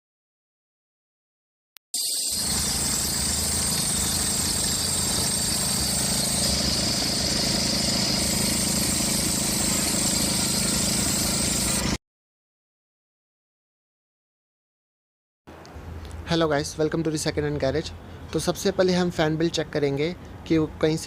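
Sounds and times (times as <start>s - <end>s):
high-pitched belt squeal: 2.0s - 12.0s.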